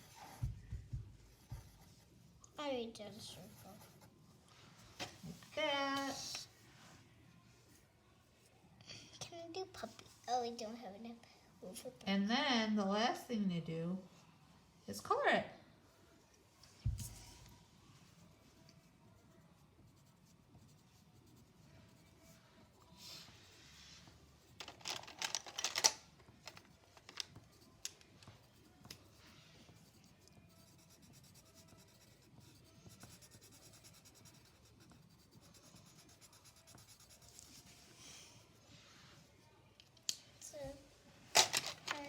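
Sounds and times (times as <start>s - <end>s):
drawing tool scratching on paper: 28.4s - 37.8s
rapid scribbling strokes: 28.4s - 37.9s.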